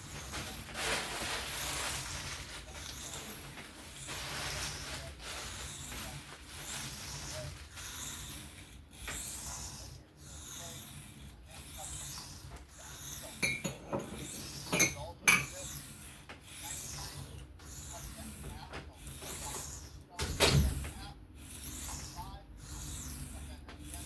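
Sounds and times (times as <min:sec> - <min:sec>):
knife scraping on sharpening plate: 0:11.8 - 0:18.5.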